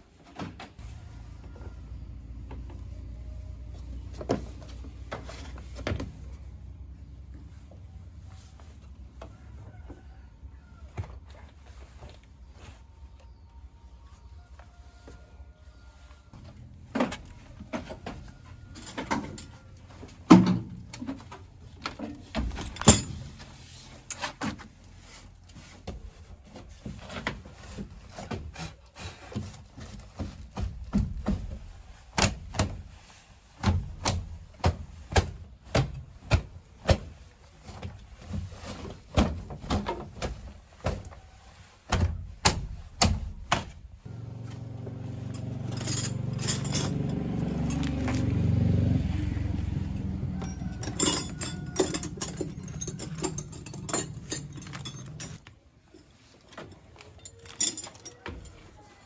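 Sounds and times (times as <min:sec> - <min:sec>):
metal tools clinking and knocking: 0:18.7 - 0:19.8, 0:22.3 - 0:23.4, 0:45.1 - 0:48.1, 0:49.9 - 0:58.8.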